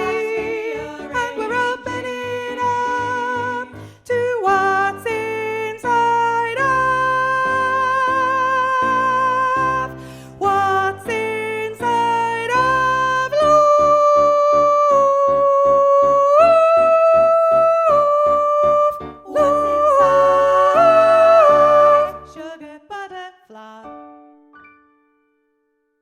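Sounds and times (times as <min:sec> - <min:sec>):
choral accompaniment music: 0:00.0 - 0:14.1, 0:16.4 - 0:22.6.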